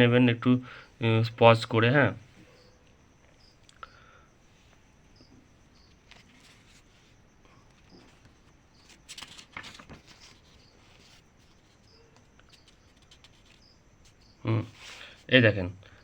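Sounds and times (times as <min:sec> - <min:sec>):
insect chirping: 0:00.0 - 0:16.0
clicks and rustles: 0:07.6 - 0:15.0.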